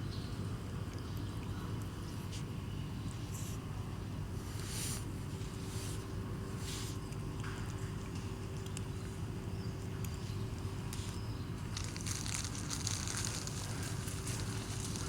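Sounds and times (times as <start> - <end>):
low background hum: 0.0 - 15.0
crunchy chewing: 5.3 - 15.0.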